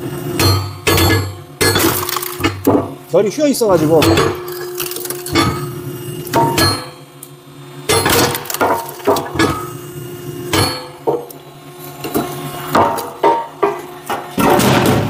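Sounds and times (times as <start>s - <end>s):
log splitter machine hum: 0.0s - 15.0s
wood pieces falling: 1.7s - 2.9s, 8.0s - 9.3s.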